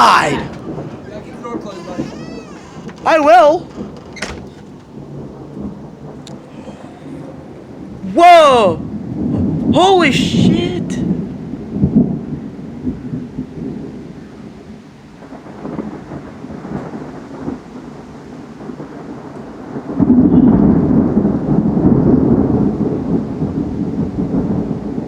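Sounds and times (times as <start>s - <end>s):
loud thunder peal: 0.0s - 25.0s
rain falling: 0.0s - 25.0s
thunder rumbling: 0.0s - 25.0s.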